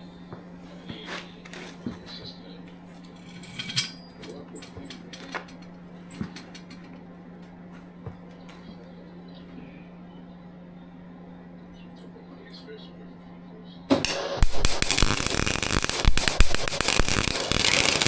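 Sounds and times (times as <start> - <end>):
steady low hum: 0.0 - 18.0
light clicks and clinks: 3.0 - 7.0
ringing metallic clink: 3.2 - 6.9.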